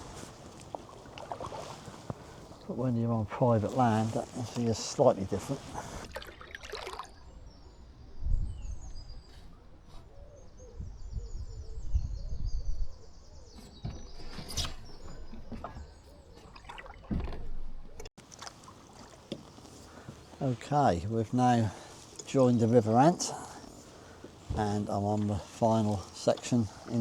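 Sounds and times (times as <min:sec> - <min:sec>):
paddle knocks and splashes: 0:00.0 - 0:02.7, 0:15.0 - 0:20.3
small birds chirping: 0:07.0 - 0:16.8, 0:18.9 - 0:27.0
wind rumble on microphone: 0:07.2 - 0:16.0.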